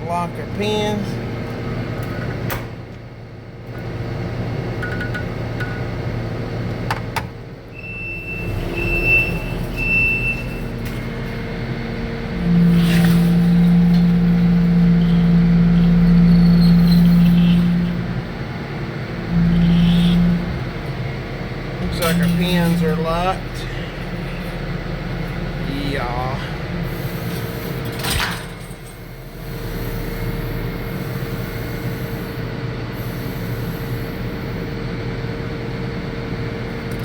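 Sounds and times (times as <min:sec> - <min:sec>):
hydraulic hum: 0:00.0 - 0:37.0
diesel engine running: 0:03.1 - 0:37.0.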